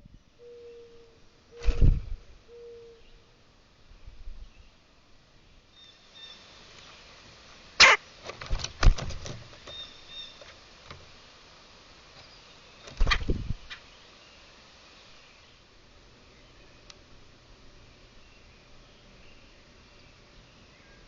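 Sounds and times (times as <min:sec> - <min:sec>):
small birds chirping: 0:03.9 - 0:08.4, 0:09.5 - 0:10.7, 0:12.1 - 0:21.0.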